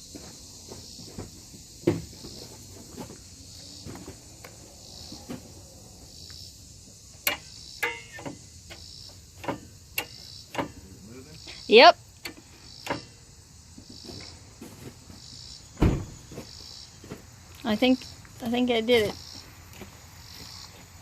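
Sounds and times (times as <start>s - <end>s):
crickets chirping: 0.0s - 21.0s
metallic latch clicks and clunks: 7.2s - 10.9s, 12.2s - 13.2s.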